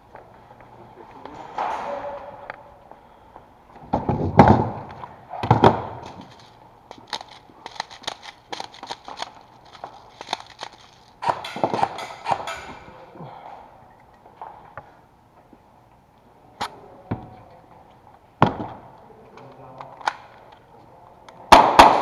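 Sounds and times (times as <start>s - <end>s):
sharp knocks and clicks: 5.4s - 13.0s.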